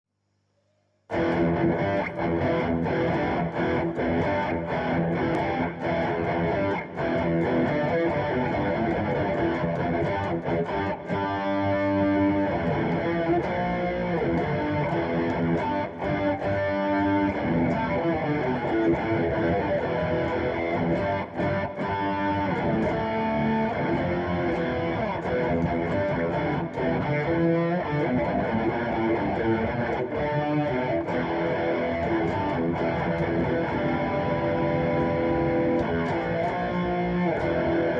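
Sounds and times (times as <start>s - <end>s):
distorted electric guitar: 1.1s - 37.9s.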